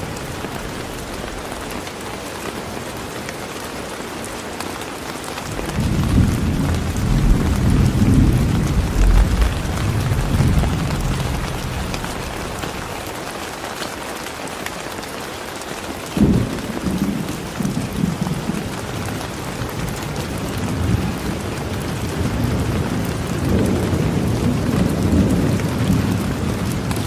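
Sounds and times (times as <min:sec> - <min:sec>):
steady rain: 0:00.0 - 0:27.0
thunder crack and rumble: 0:05.5 - 0:13.3, 0:16.2 - 0:27.0.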